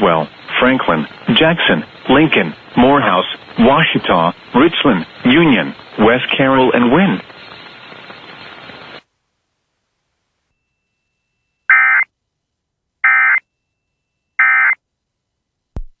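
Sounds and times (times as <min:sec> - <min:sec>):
faint radio hiss: 0:00.0 - 0:15.8
data tone bursts: 0:10.6 - 0:12.1, 0:13.0 - 0:13.4, 0:14.4 - 0:14.8.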